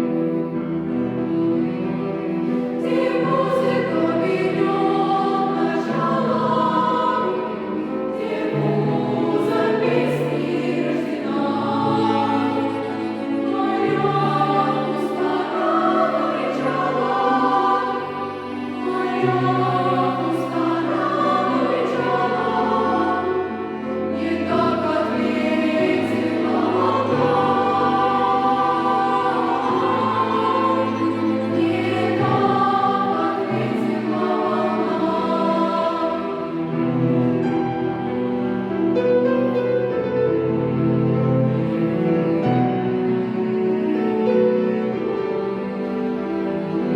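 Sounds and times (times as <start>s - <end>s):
children's choir singing: 0.0s - 46.9s
piano: 0.0s - 46.9s.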